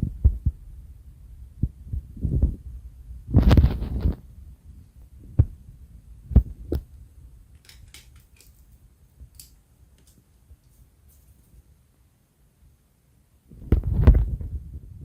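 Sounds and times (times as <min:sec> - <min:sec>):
steady low rumble: 0:00.0 - 0:07.6.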